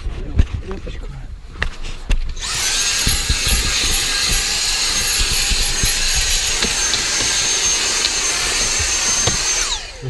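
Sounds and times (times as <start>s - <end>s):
vacuum nozzle bumps: 2.1s - 9.9s
vacuum cleaner motor whining: 2.4s - 10.0s.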